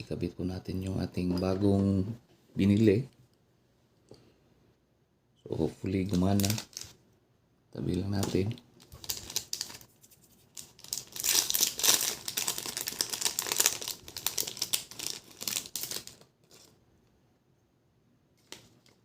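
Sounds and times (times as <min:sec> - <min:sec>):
plastic packaging crinkling: 0:06.0 - 0:07.0, 0:08.2 - 0:16.8.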